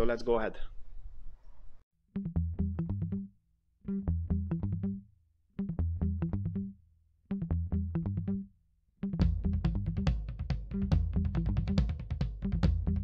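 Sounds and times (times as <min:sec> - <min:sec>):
electronic music with drum machine: 0:09.2 - 0:13.0.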